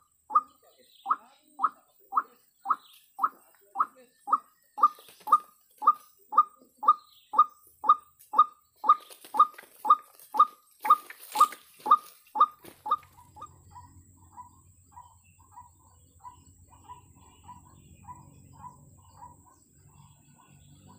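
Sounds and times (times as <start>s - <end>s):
waterhen croaking call: 0.0s - 19.3s.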